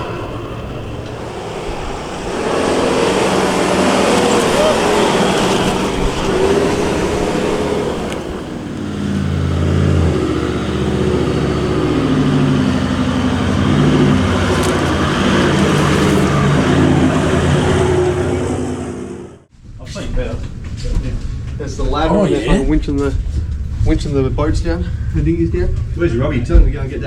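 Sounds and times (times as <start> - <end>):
car engine running: 0.0 - 19.5
road and tyre noise: 0.0 - 27.0.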